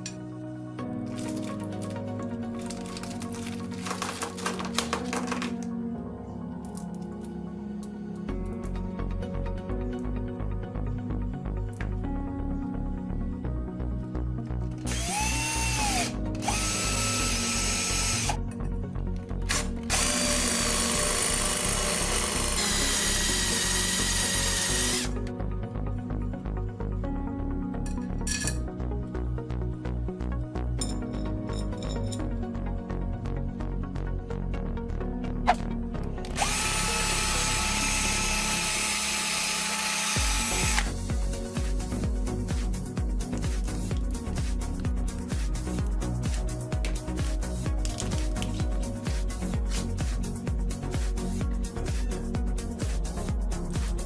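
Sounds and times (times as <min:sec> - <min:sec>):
background music: 0:00.0 - 0:54.0
electric drill boring: 0:14.9 - 0:18.4, 0:19.5 - 0:25.2, 0:36.3 - 0:41.1.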